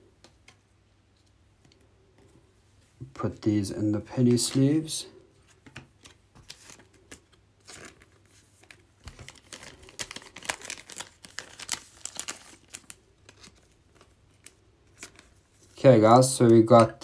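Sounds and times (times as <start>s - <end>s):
plastic sleeves crinkling: 4.0s - 17.0s.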